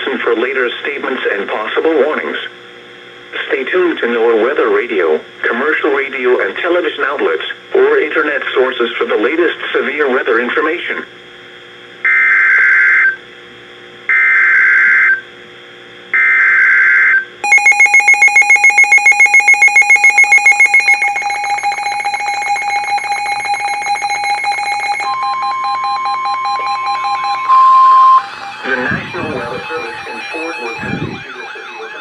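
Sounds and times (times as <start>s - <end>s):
electronic alarm tone: 16.2s - 32.0s
screeching digital data bursts: 16.6s - 32.0s
steady tone: 17.4s - 32.0s.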